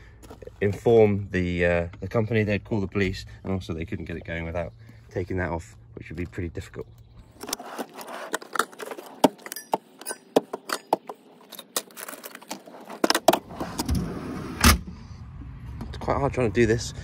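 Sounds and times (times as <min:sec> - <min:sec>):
keys and metal parts jangling: 0:09.4 - 0:10.9.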